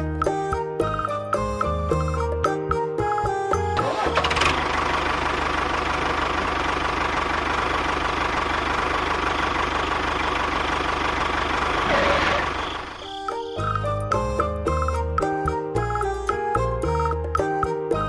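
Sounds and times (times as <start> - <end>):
small engine humming: 3.8 - 13.8.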